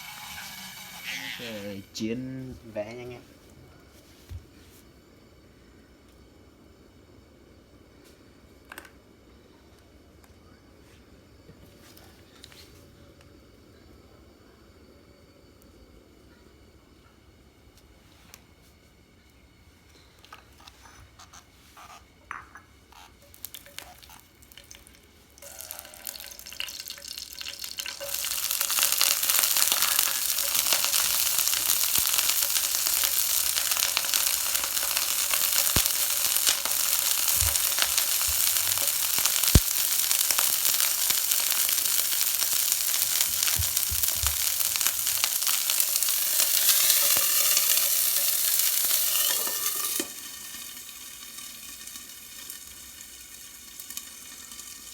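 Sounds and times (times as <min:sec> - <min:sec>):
frying in hot oil sizzling: 0:00.0 - 0:02.1, 0:21.7 - 0:54.9.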